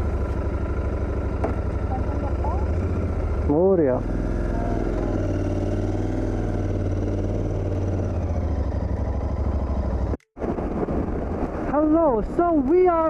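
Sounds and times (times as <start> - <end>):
motorcycle engine idling: 0.0 - 5.4, 6.4 - 10.2.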